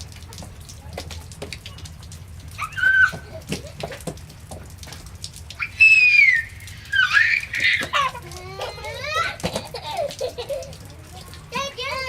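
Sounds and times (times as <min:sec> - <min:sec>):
water drops pattering: 0:00.0 - 0:12.0
toddler squealing: 0:02.6 - 0:03.4, 0:05.6 - 0:09.4.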